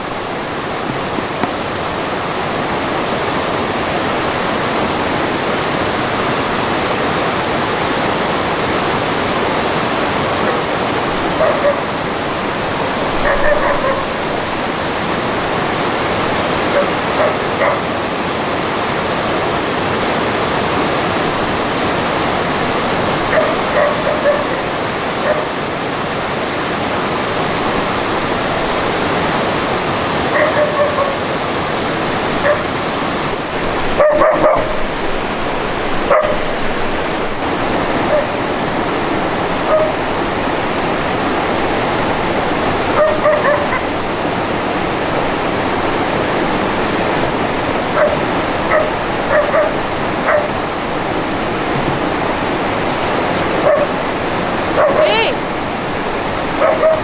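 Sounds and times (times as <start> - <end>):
mountain stream rushing: 0.0 - 57.0
dog yipping and whining: 13.2 - 14.2, 30.4 - 31.2, 43.0 - 43.9.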